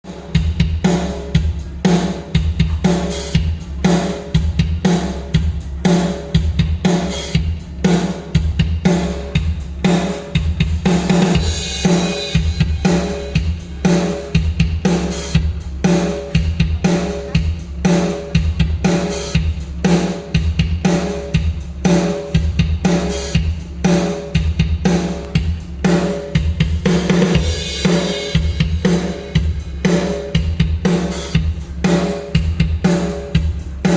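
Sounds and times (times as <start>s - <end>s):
drum kit beat: 0.0s - 33.9s
cymbal crashes: 11.2s - 14.6s.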